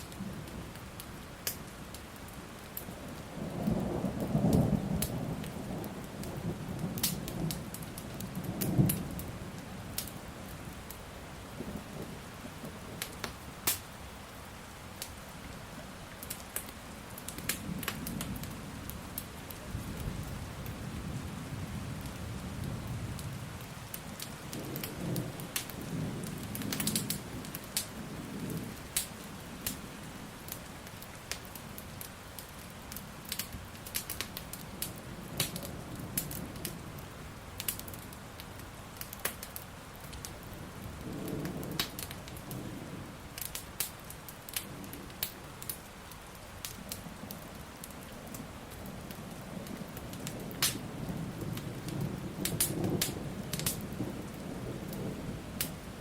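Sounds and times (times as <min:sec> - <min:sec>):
log fire crackling: 0:00.0 - 0:56.0
steady rain: 0:00.0 - 0:56.0
thunder rumbling: 0:17.4 - 0:30.3, 0:40.3 - 0:43.8, 0:46.8 - 0:56.0.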